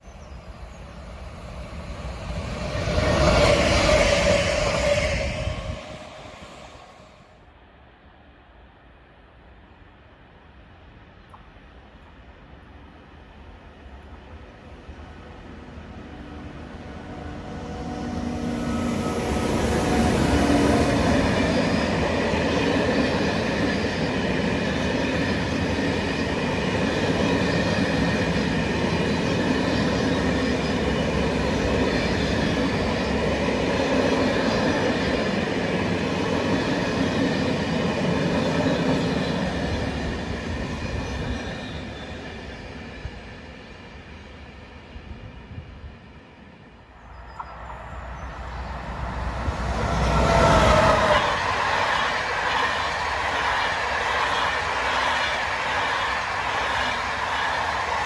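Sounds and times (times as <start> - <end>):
train wheels rumbling on rails: 0.0 - 7.1, 12.0 - 58.0
train approaching: 0.0 - 58.0.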